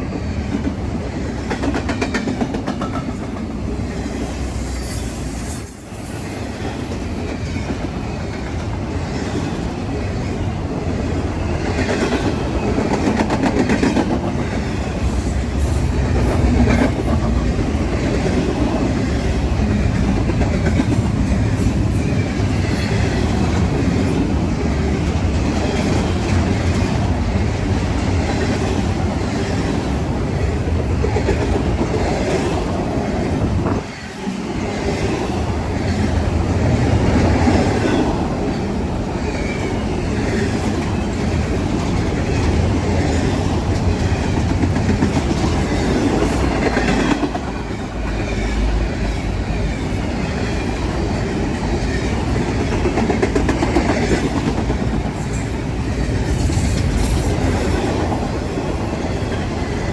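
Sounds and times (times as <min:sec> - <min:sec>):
freight train cars rumbling past: 0:00.0 - 0:59.9
wheels clicking over rail joints: 0:00.1 - 0:03.6.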